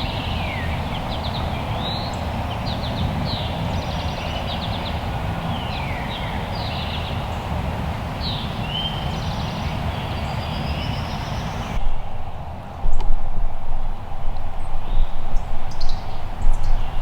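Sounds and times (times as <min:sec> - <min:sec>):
songbirds chirping and trilling: 0:00.0 - 0:13.1, 0:14.0 - 0:17.0
steady low rumble: 0:11.0 - 0:17.0.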